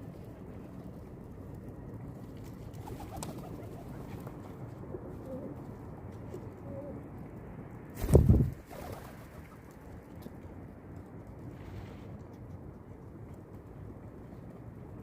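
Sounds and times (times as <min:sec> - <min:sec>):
pigeons cooing: 0:05.0 - 0:05.6, 0:06.4 - 0:07.0.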